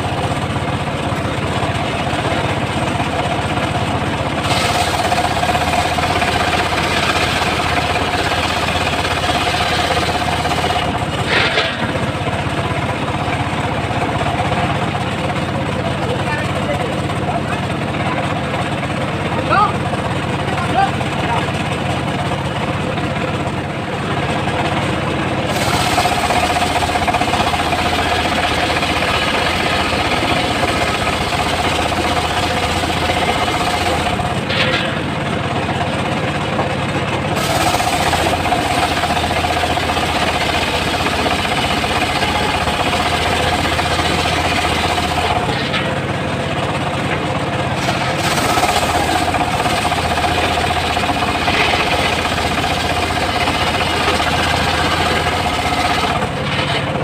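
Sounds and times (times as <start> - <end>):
engine drone: 0.0 - 57.0
saw blade cutting through log: 4.4 - 12.1, 25.5 - 34.6, 37.4 - 46.0, 47.8 - 57.0.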